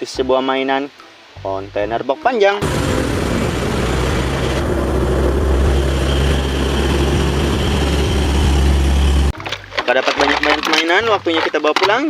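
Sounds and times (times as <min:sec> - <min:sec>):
motor humming: 0:02.6 - 0:09.4.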